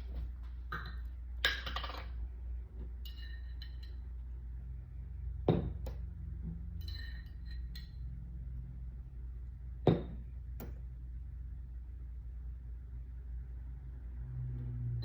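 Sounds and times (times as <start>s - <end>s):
steady low hum: 0.0s - 15.0s
sharp knocks on a counter: 5.5s - 6.0s, 9.8s - 10.8s.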